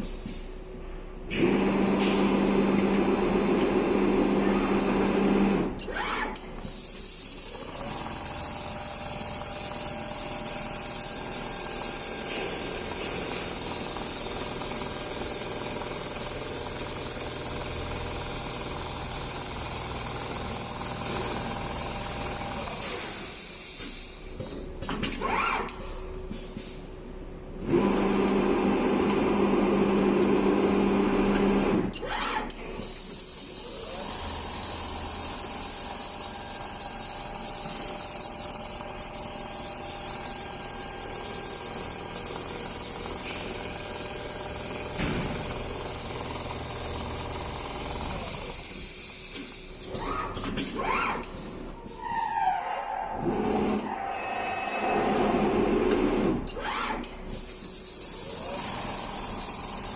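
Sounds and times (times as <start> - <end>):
sewing machine buzzing: 1.3 - 23.3, 27.7 - 48.7, 55.0 - 59.9
sewing machine high-pitched whir: 1.4 - 23.6, 27.6 - 51.3, 52.0 - 59.9.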